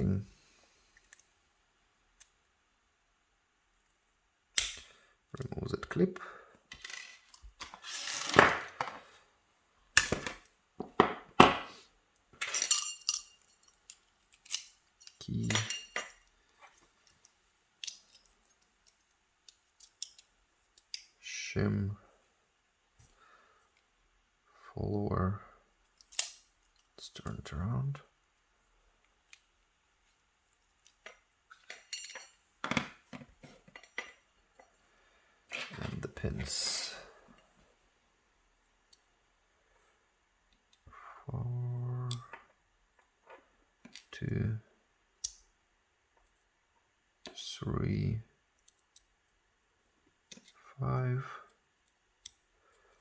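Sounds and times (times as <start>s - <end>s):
small metal parts clinking: 6.7s - 8.8s, 12.4s - 16.3s, 17.0s - 21.1s, 30.8s - 32.4s
metal lock parts clicking: 12.5s - 16.3s, 26.0s - 26.9s.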